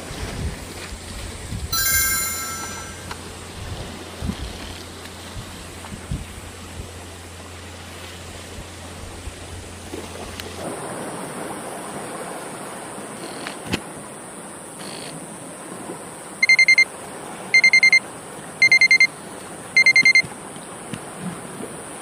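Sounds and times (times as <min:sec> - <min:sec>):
electronic alarm beeping: 0:01.8 - 0:03.2, 0:16.4 - 0:16.8, 0:17.6 - 0:18.0, 0:18.6 - 0:19.1, 0:19.8 - 0:20.2.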